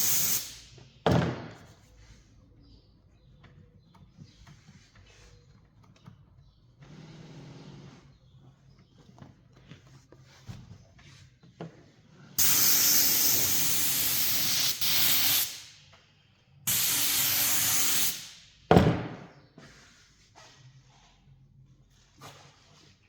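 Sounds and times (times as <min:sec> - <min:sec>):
hissing spray: 0:00.0 - 0:00.6, 0:12.4 - 0:15.7, 0:16.7 - 0:18.4.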